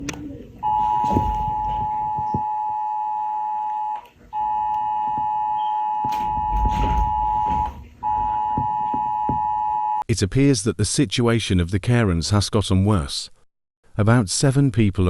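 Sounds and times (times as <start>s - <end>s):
two-tone alert signal: 0.6s - 10.0s.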